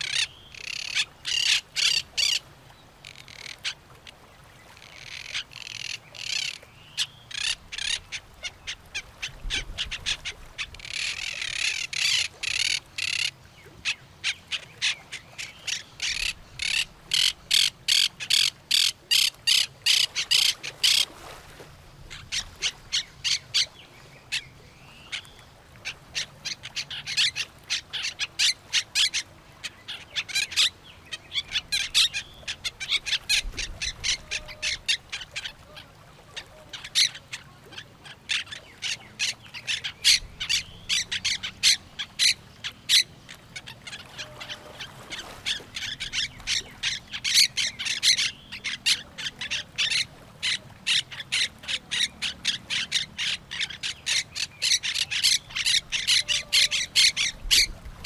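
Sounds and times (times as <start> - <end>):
parrots squawking: 10.8 - 13.3, 15.7 - 21.0, 31.3 - 35.6, 39.6 - 43.0, 43.6 - 57.7.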